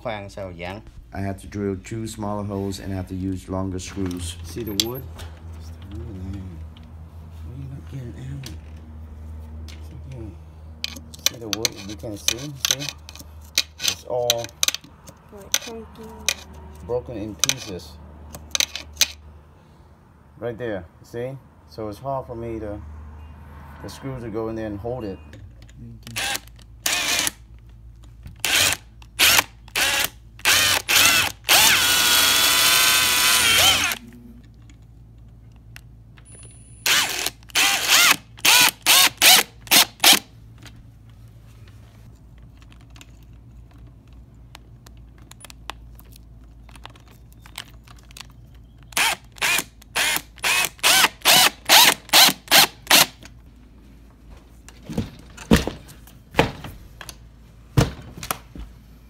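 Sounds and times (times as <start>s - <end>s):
power drill driving screws into wood: 26.1s - 27.4s, 28.4s - 34.0s, 36.8s - 40.3s, 48.9s - 53.2s.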